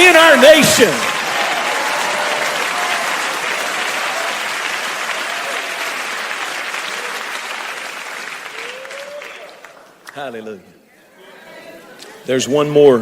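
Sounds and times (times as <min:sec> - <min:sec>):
congregation applauding: 0:00.0 - 0:10.3.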